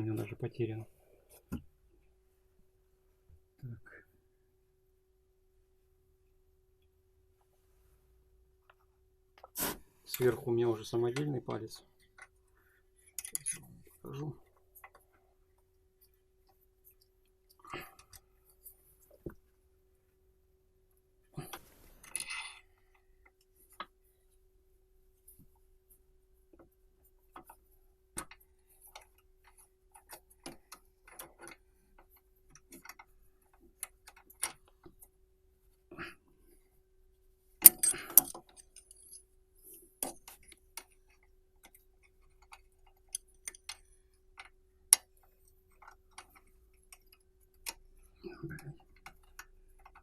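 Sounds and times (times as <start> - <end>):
faint steady hum: 0.0 - 50.0
metallic clinks of hand tools: 37.6 - 39.2.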